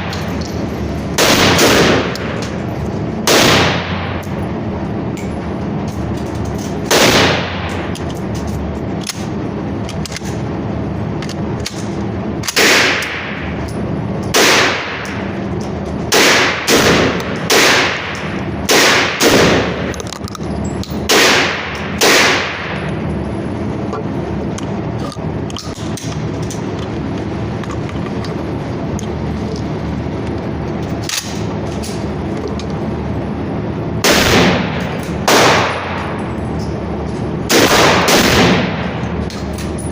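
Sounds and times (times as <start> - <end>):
rifle shots with ringing echo: 1.1 - 4.3, 6.8 - 8.0, 12.5 - 13.6, 14.3 - 15.3, 16.1 - 19.9, 21.0 - 22.9, 34.0 - 36.2, 37.4 - 39.1.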